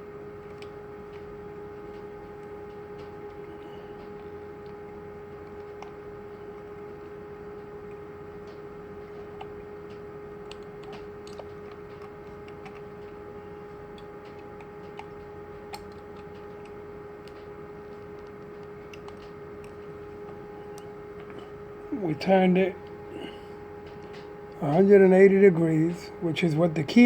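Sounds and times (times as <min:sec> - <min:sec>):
faint hum: 0:00.0 - 0:27.0.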